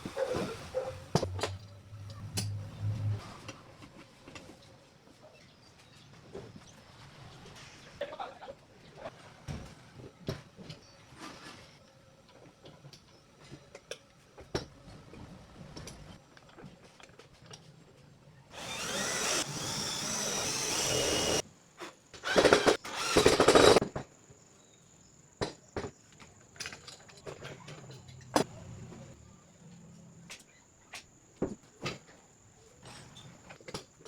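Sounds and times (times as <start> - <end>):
power drill running: 18.5 - 21.4, 22.2 - 23.8.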